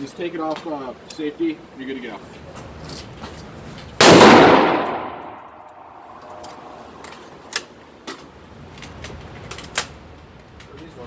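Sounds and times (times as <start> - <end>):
rifle shot with echo: 4.0 - 6.1.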